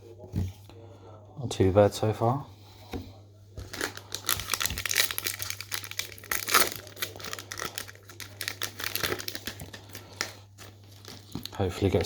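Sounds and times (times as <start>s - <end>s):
card pack wrapper tearing: 3.7s - 10.3s.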